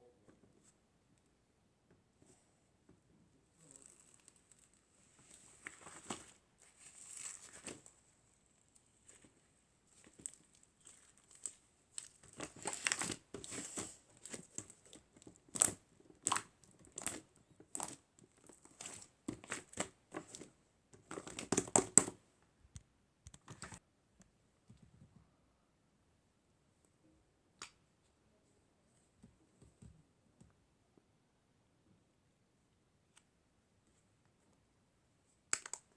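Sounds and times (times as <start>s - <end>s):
crinkling handling noise: 3.7s - 22.2s.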